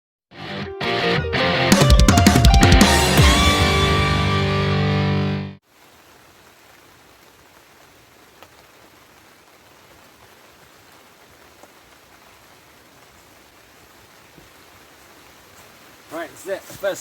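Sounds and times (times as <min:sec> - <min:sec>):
rock music: 0:00.3 - 0:05.6
rain hissing: 0:05.6 - 0:17.0.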